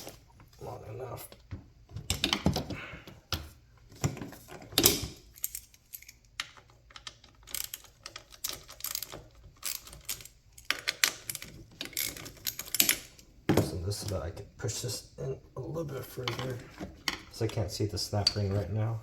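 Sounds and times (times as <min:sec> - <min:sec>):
metal parts clicking and clinking: 0:04.7 - 0:13.2.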